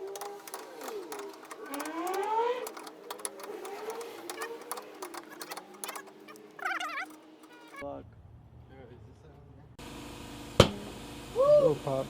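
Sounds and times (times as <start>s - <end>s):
air compressor rattling and humming: 0.0s - 7.8s.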